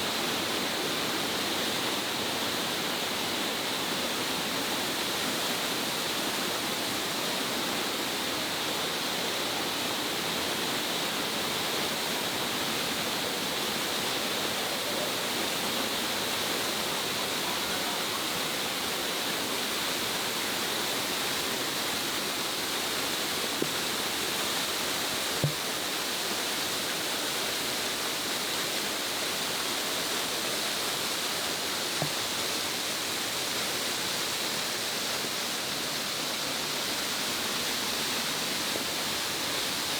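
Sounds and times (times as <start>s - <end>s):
brief taps: 25.4s - 25.6s.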